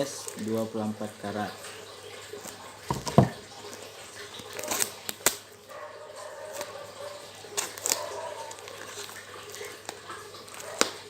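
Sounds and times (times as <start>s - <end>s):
packaging snapping and crinkling: 4.4s - 5.5s, 6.4s - 6.8s, 7.4s - 11.0s.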